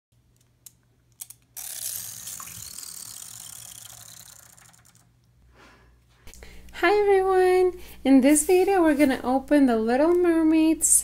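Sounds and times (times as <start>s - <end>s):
wind-up toy clockwork whirring: 1.6s - 5.2s.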